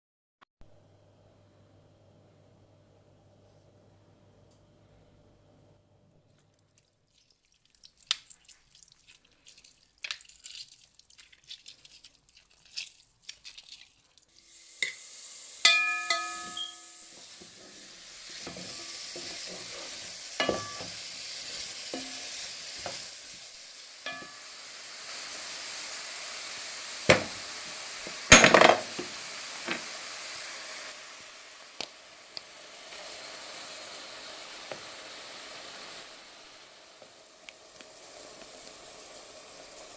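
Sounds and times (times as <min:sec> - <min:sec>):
vegetables sizzling in a pan: 0:13.1 - 0:39.9
utensil knocking against pan: 0:15.7 - 0:16.8, 0:20.4 - 0:21.0, 0:24.1 - 0:24.4.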